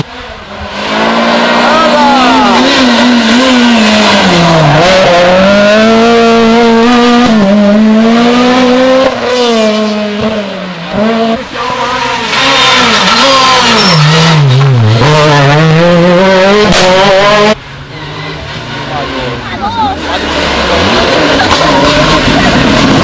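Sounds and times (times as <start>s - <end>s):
rally car engine revving: 0.0s - 23.0s.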